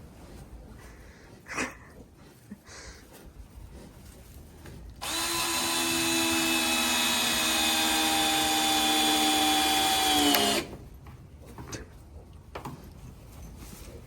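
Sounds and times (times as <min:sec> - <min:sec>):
power drill whining: 0:05.0 - 0:10.7.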